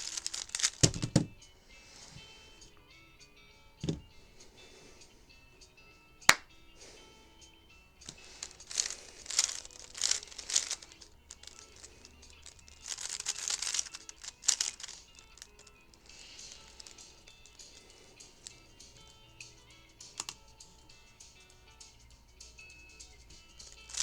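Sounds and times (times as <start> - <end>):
puzzle cube clacking and scraping: 0.0 - 2.5, 8.0 - 21.8, 23.0 - 24.0
sharp plastic click: 20.0 - 20.4.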